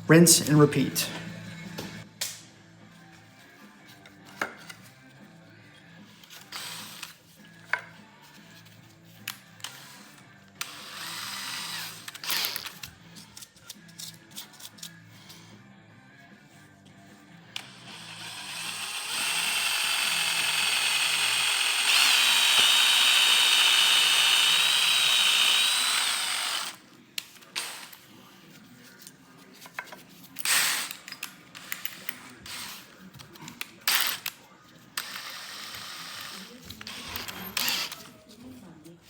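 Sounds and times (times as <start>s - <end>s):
electric drill whining: 6.5s - 7.2s, 10.6s - 12.7s, 17.6s - 26.8s, 35.0s - 38.1s.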